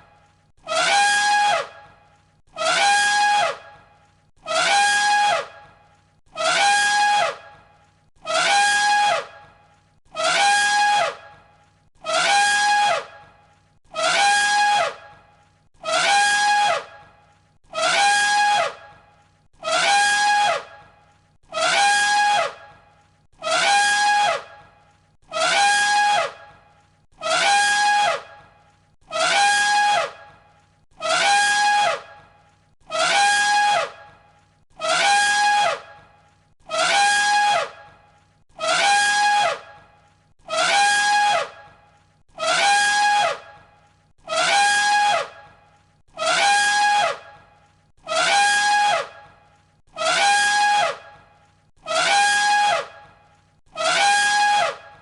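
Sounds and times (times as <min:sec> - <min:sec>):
elephant trumpet call: 0:00.6 - 0:01.8, 0:02.5 - 0:03.8, 0:04.4 - 0:05.7, 0:06.3 - 0:07.6, 0:08.2 - 0:09.3, 0:10.1 - 0:11.4, 0:12.0 - 0:13.3, 0:13.9 - 0:15.2, 0:15.8 - 0:17.1, 0:17.7 - 0:19.0, 0:19.6 - 0:22.8, 0:23.4 - 0:28.5, 0:29.1 - 0:32.3, 0:32.9 - 0:34.2, 0:34.8 - 0:38.0, 0:38.6 - 0:41.8, 0:42.4 - 0:43.6, 0:44.2 - 0:51.2, 0:51.8 - 0:55.0.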